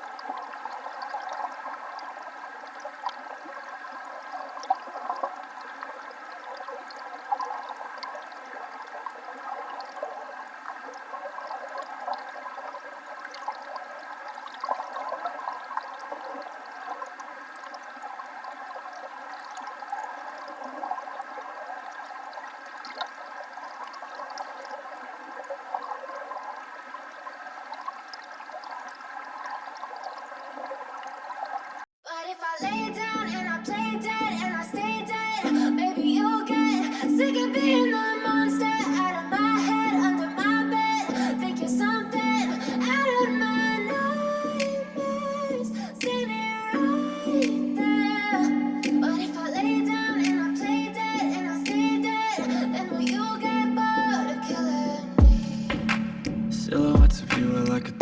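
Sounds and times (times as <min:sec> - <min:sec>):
small water splashes: 0:00.0 - 0:31.9.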